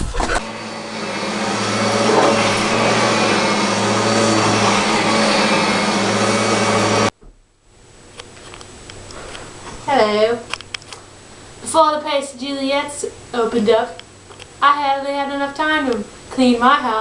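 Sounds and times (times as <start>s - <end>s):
electric motor appliance running: 0.3s - 7.1s.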